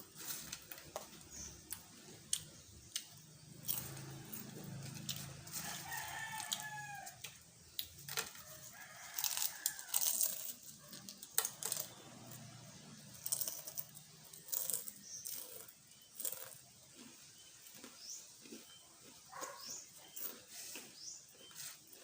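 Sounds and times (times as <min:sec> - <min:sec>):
chips being chewed: 0:00.0 - 0:22.0.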